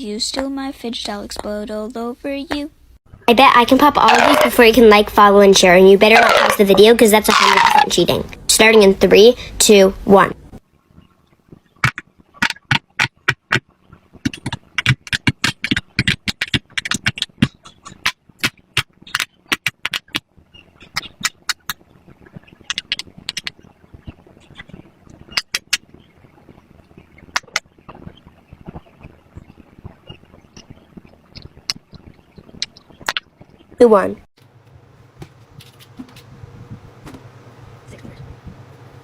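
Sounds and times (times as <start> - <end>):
fidget toy bubbles popping: 4.0 - 4.6, 6.1 - 7.9, 11.8 - 25.9, 27.3 - 33.5.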